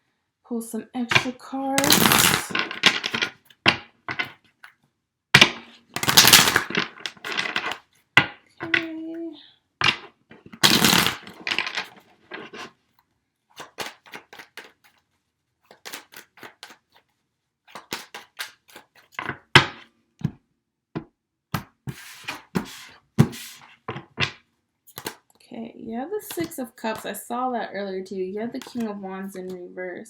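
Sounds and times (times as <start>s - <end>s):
cards clicking and flicking: 1.2s - 3.3s, 5.4s - 7.8s, 10.6s - 12.7s, 13.6s - 15.0s, 15.7s - 17.0s, 17.7s - 19.1s, 24.9s - 25.2s.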